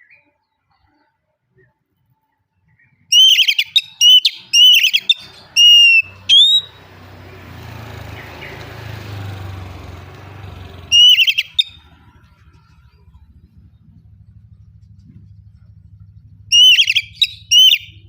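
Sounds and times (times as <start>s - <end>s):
bird singing whistled phrases: 2.8s - 6.9s, 10.8s - 12.0s, 16.5s - 18.0s
low rumbling noise: 5.2s - 18.0s.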